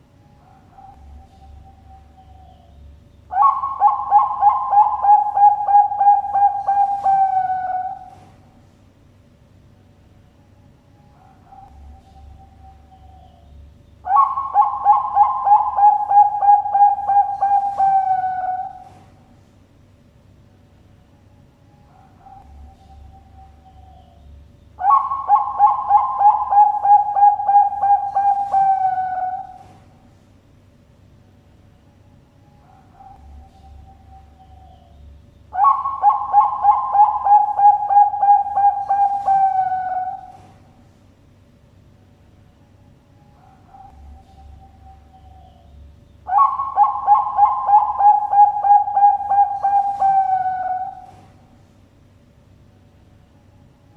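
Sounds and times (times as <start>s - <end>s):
dove cooing: 3.3s - 8.6s, 14.1s - 19.3s, 24.8s - 30.1s, 35.5s - 40.9s, 46.3s - 51.6s.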